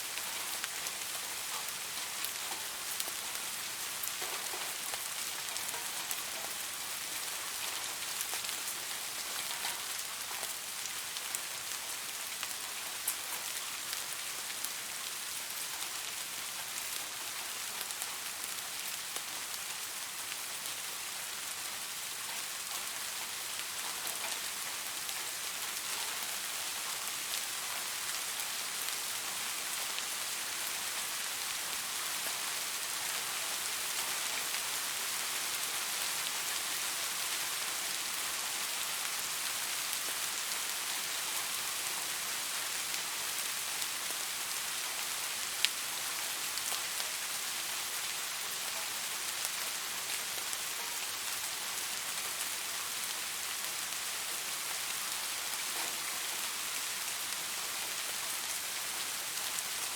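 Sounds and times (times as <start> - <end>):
rain falling on leaves: 0.0 - 59.9.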